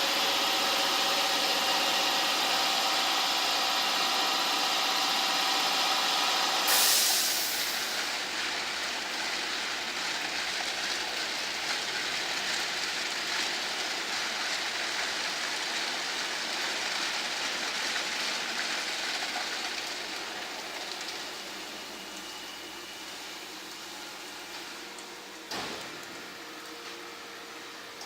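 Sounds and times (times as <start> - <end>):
car wash machine running: 0.0 - 28.0
water spray hissing: 6.7 - 7.9.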